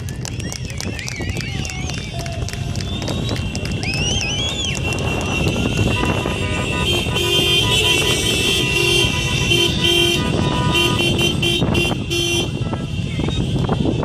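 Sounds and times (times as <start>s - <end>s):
car and crowd noise: 0.0s - 14.0s
car horns honking: 4.8s - 14.0s.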